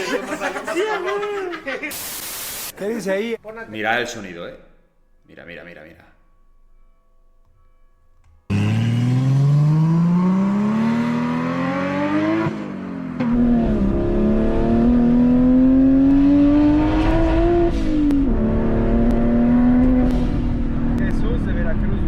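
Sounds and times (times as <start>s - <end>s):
car engine accelerating hard: 8.5s - 22.0s.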